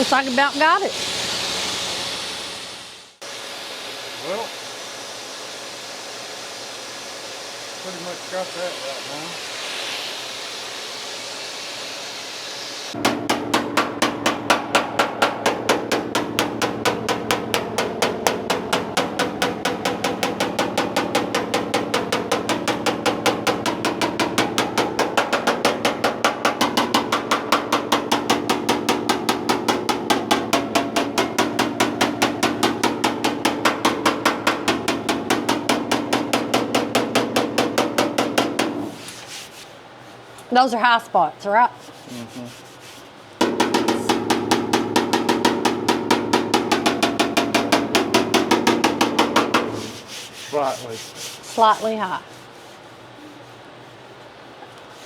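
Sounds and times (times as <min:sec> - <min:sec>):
steady hiss: 0:00.0 - 0:13.0, 0:41.8 - 0:44.4, 0:46.1 - 0:55.0
music with fast percussive beat: 0:13.0 - 0:38.9, 0:43.4 - 0:49.8.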